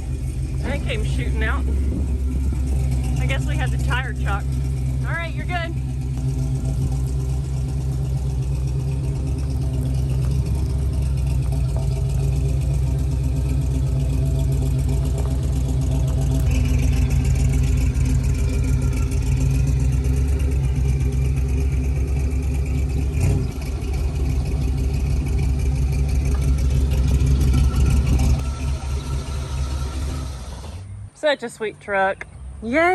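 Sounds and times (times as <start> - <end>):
higher whine: 0.0 - 31.2
truck engine running: 0.0 - 32.9.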